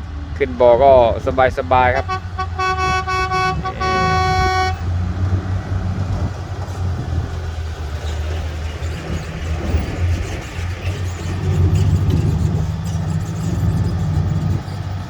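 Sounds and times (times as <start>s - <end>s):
diesel engine pulling: 0.0s - 15.0s
truck horn blasts: 1.7s - 5.0s.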